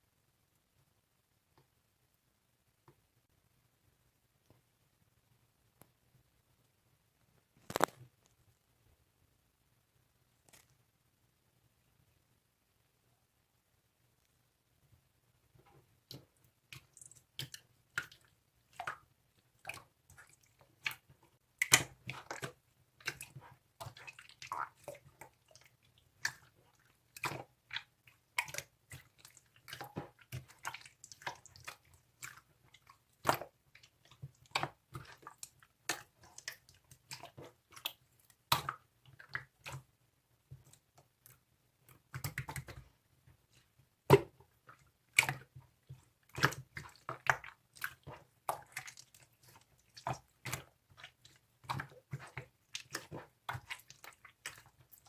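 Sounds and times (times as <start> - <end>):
wet squishy clicks and smacks: 16.1 - 19.0, 19.6 - 39.9, 40.6 - 42.9, 43.5 - 55.0.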